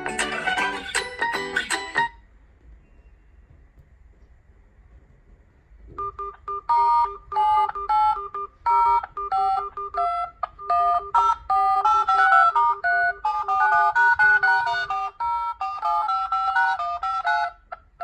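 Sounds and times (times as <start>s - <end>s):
smartphone ringing melody: 0.0s - 2.2s, 6.0s - 18.0s.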